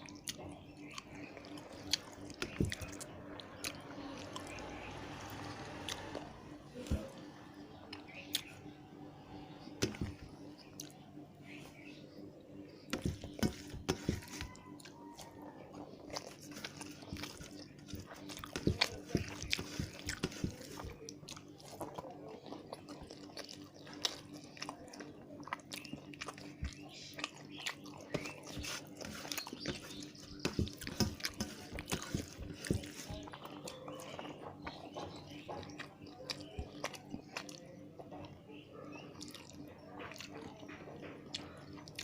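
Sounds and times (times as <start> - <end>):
person chewing: 0.0 - 7.1, 7.9 - 8.6, 12.9 - 34.2, 35.6 - 37.7, 39.2 - 40.3, 41.3 - 42.0
faint steady hum: 0.0 - 34.8.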